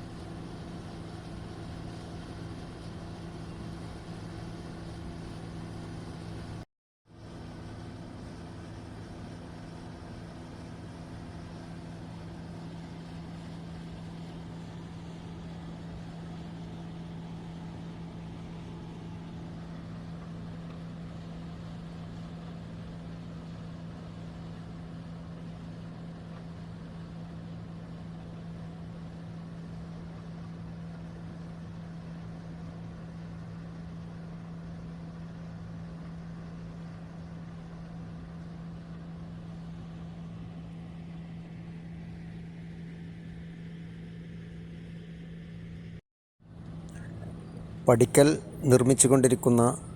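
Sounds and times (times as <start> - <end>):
diesel engine humming: 46.5 - 49.9.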